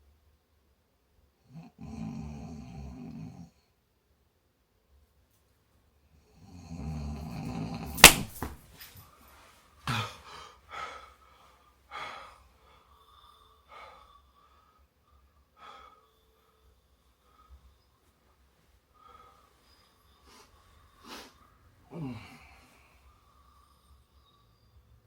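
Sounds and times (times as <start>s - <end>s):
man snoring: 1.6s - 3.5s, 6.5s - 7.9s, 21.9s - 22.6s
sharp crack: 8.0s - 8.6s
wheezy breaths with whistle: 9.9s - 21.8s, 22.4s - 25.0s.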